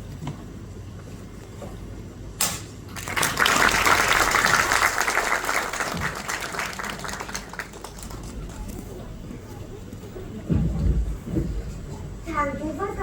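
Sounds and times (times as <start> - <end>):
audience clapping: 2.9 - 8.7.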